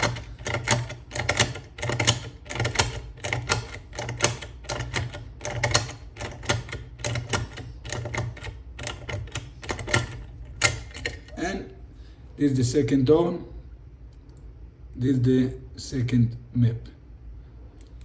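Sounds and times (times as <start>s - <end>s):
rapid metallic clicking in lock: 0.0s - 11.4s.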